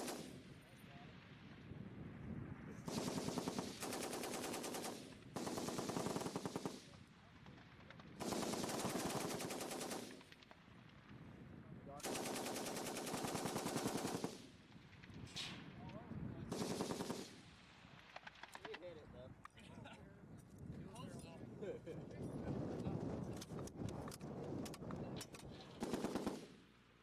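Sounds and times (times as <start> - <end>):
machine gun automatic fire: 0.0 - 0.3, 2.9 - 7.0, 8.2 - 10.4, 12.0 - 14.4, 16.5 - 17.4, 25.4 - 26.6.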